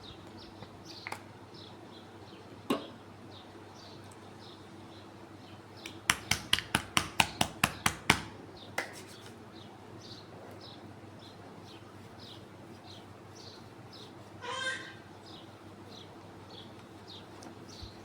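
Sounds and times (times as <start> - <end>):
hands slapping skin: 5.8 - 9.1
birds chirping faintly: 7.2 - 18.0.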